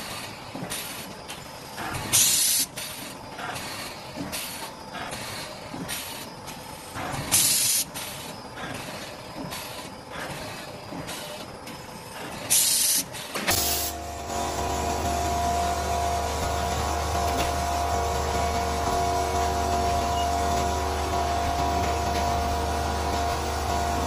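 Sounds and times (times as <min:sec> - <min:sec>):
machine mechanical clatter: 0:00.0 - 0:24.0
compressed air hisses: 0:02.1 - 0:11.4, 0:12.5 - 0:13.9.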